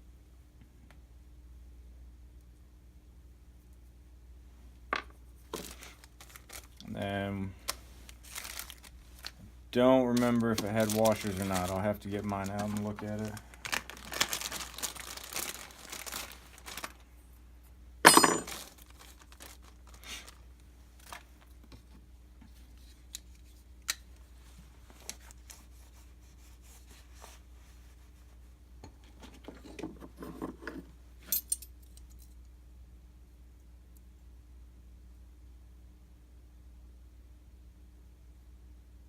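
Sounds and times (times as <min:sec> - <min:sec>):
packaging crinkling: 0:05.5 - 0:06.9, 0:07.6 - 0:17.1, 0:18.4 - 0:21.5
hardware clattering: 0:18.0 - 0:18.7
small metal clinks: 0:18.1 - 0:18.6, 0:31.2 - 0:32.4.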